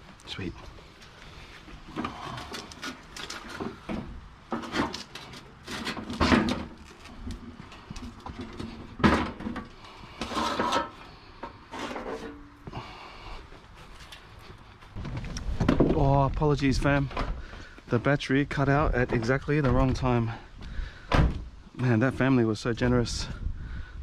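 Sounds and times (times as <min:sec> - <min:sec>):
knocks and thumps of items loaded: 0:05.7 - 0:06.8, 0:08.1 - 0:11.0, 0:14.9 - 0:16.1.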